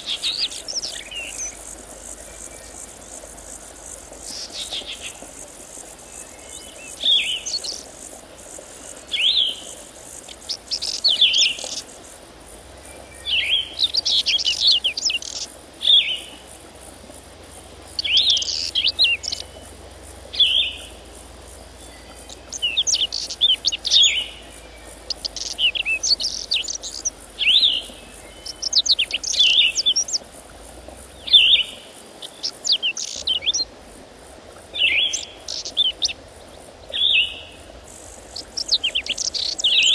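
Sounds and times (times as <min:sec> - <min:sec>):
songbird singing: 0:00.0 - 0:12.2, 0:12.8 - 0:16.5, 0:17.8 - 0:33.8, 0:34.7 - 0:39.9.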